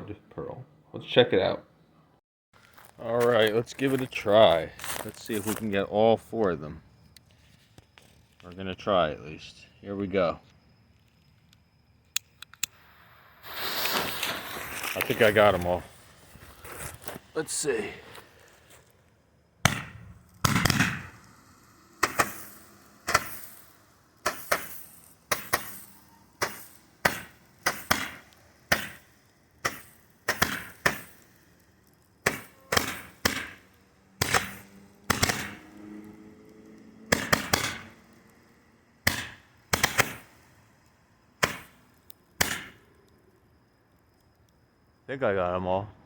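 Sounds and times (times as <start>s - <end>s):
fireworks popping with hiss: 12.6s - 43.6s.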